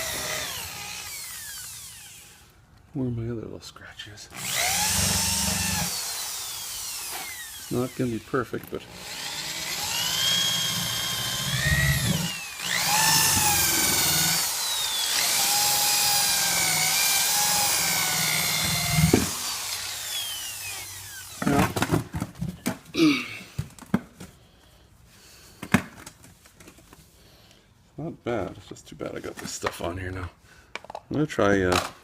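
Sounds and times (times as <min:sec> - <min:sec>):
electric drill polishing whine: 0:00.0 - 0:02.5, 0:04.4 - 0:08.1, 0:08.9 - 0:21.5.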